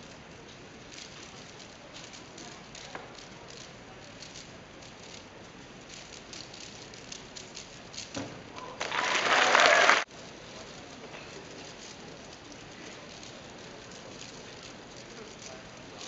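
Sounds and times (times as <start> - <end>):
applause: 8.8 - 10.1.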